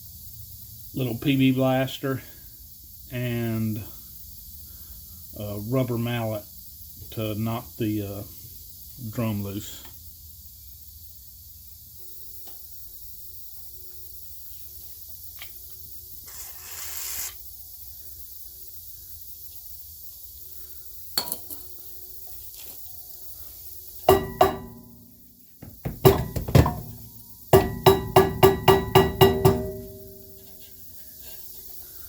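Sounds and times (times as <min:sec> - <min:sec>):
oil spray hiss: 0:16.0 - 0:17.5
rubber mallet striking metal drum: 0:24.1 - 0:30.5
metal drum ringing: 0:24.1 - 0:30.6.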